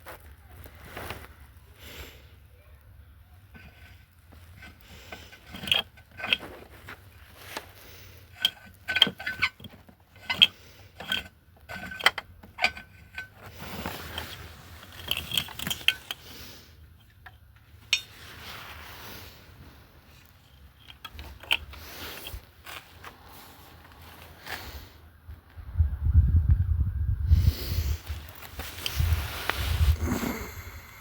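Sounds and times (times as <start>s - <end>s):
scraping and rustling: 0.0s - 1.6s, 3.4s - 24.9s, 27.6s - 30.4s
metal hand tools clicking: 4.6s - 6.5s, 8.4s - 16.3s.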